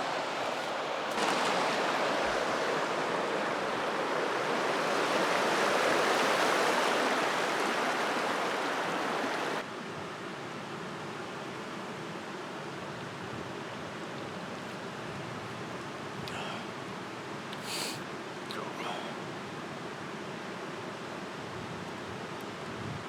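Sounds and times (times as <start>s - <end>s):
creek water rushing: 0.0s - 9.7s.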